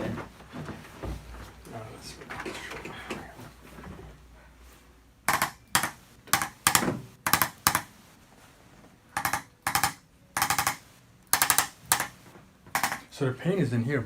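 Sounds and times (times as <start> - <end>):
massage gun rapid tapping: 5.3 - 8.0, 9.2 - 12.2, 12.8 - 13.1.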